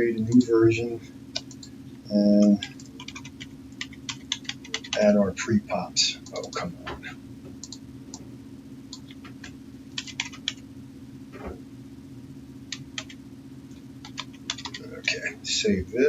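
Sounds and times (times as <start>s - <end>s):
steady low hum: 0.0s - 16.0s
keyboard and mouse clicks: 1.3s - 1.7s, 2.4s - 5.0s, 6.3s - 8.3s, 8.9s - 10.6s, 12.7s - 13.2s, 14.0s - 14.8s.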